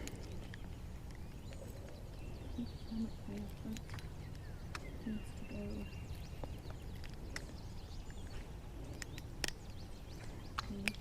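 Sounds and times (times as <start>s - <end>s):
low outdoor rumble: 0.0s - 11.0s
small clicks and ticks: 3.2s - 4.9s, 6.4s - 11.0s.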